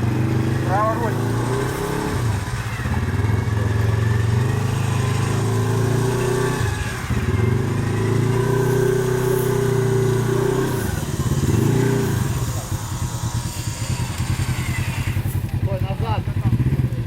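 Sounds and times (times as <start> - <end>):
buggy engine revving hard: 0.0 - 17.0.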